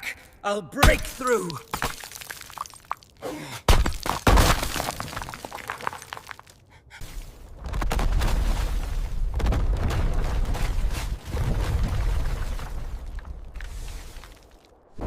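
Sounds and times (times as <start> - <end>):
heavy impacts on ice: 0.8 - 6.6
ice crackling and shattering: 0.9 - 6.6, 7.8 - 14.7.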